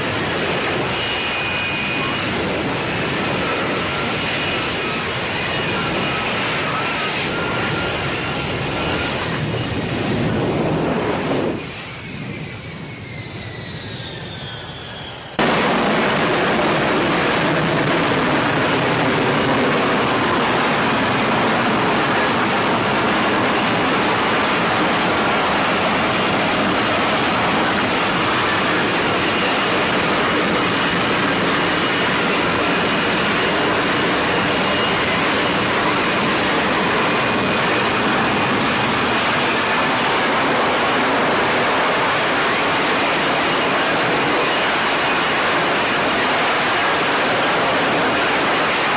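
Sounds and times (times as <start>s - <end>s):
jet engine roar: 0.0s - 48.9s
jet engine whine: 0.0s - 48.9s.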